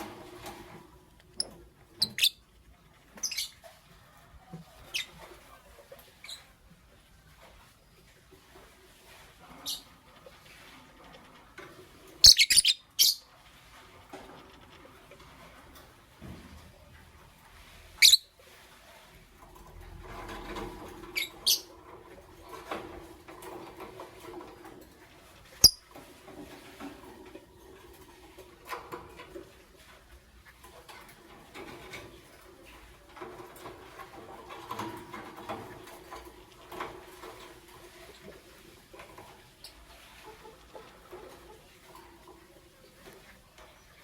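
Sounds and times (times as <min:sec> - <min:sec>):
scratchy bird twittering: 0:02.0 - 0:02.4, 0:12.2 - 0:13.3, 0:18.0 - 0:18.3
shrill bird chirps: 0:12.3 - 0:13.2.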